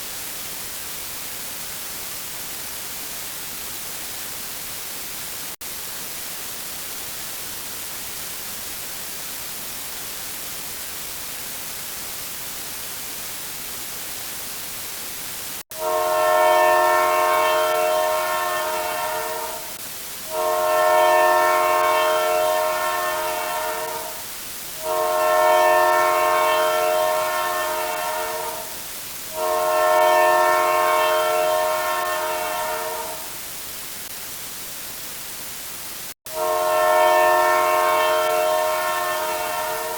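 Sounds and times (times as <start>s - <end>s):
static hiss: 0.0s - 39.9s
multi-note horn blasts: 15.7s - 33.3s, 36.3s - 39.9s.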